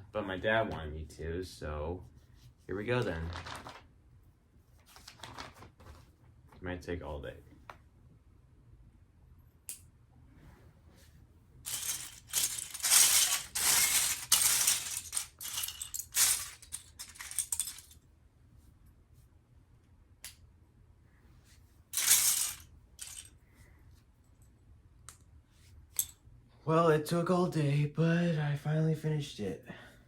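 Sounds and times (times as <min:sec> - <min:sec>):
plastic bricks clattering: 0:11.7 - 0:18.0, 0:22.0 - 0:23.3.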